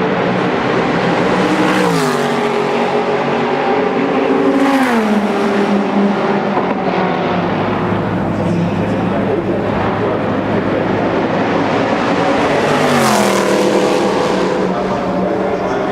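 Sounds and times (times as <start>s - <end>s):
racing car engines full throttle: 0.0s - 15.9s.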